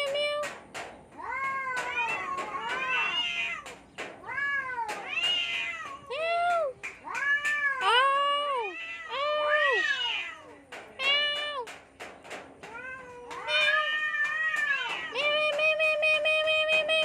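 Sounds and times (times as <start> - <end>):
cats yowling in a fight: 1.2 - 11.6, 12.6 - 15.3.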